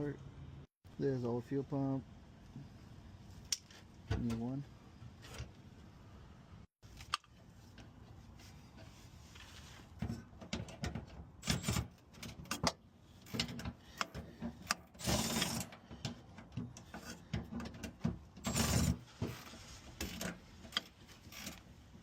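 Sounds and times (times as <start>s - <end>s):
scraping or rustling: 18.4s - 21.7s.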